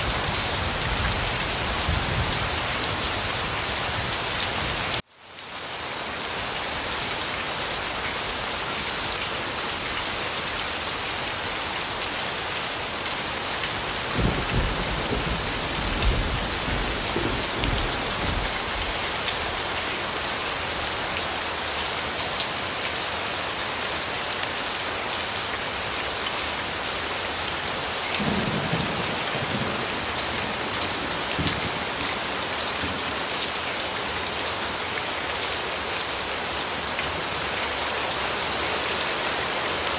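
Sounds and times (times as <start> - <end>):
heavy rain pattering: 0.0 - 5.0, 6.1 - 39.9
thunder rumbling: 14.2 - 18.6.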